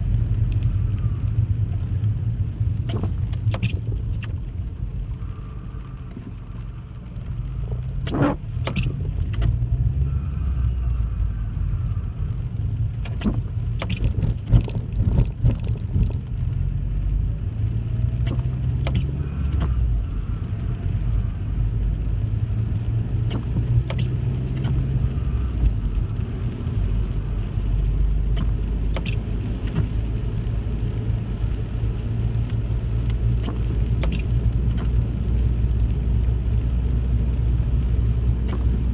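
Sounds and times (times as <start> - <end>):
car road rumble: 0.0 - 38.9
loose object rattling in car: 7.9 - 9.6, 13.0 - 16.3.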